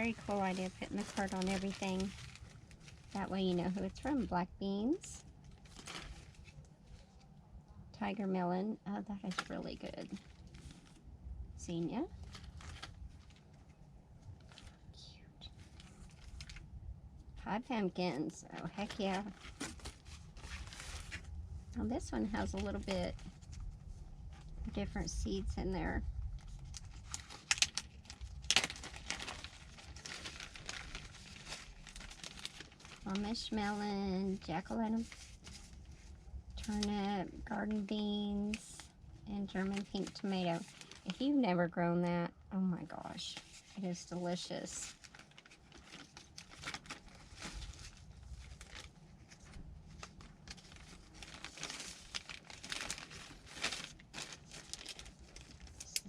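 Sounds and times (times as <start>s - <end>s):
sharp crackles and clicks: 0.0s - 4.3s, 18.2s - 35.7s
seed packets crinkling: 0.0s - 6.7s, 24.8s - 35.7s, 39.4s - 41.3s, 44.9s - 56.0s.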